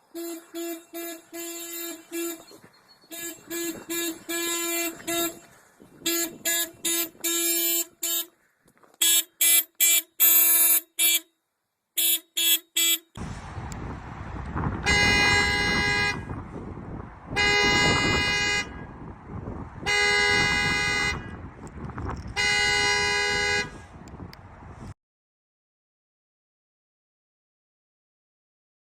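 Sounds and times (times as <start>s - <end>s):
car horn honking: 0.0s - 8.3s, 9.0s - 11.4s, 12.0s - 13.2s, 14.7s - 16.4s, 17.3s - 19.0s, 19.8s - 21.5s, 22.2s - 24.0s.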